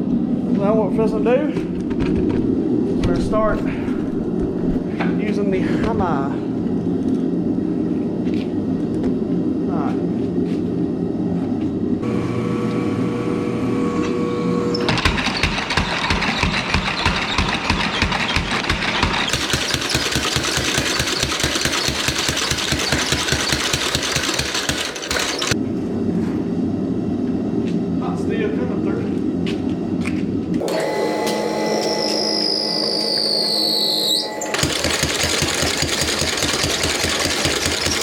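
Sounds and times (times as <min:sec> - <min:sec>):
power hammer blows: 0:12.0 - 0:25.6, 0:34.2 - 0:38.0.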